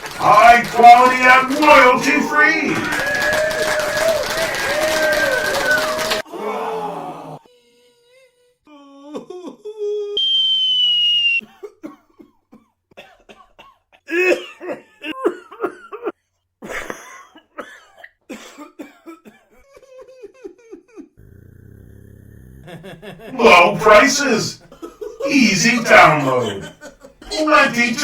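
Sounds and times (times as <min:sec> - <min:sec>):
person clearing throat: 0:13.0 - 0:16.0.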